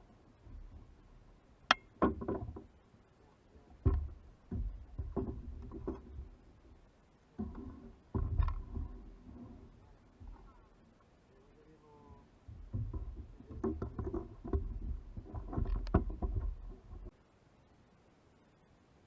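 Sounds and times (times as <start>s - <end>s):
hollow knocks on a kayak: 1.7s - 2.7s, 3.8s - 6.3s, 7.4s - 9.2s, 12.5s - 17.1s.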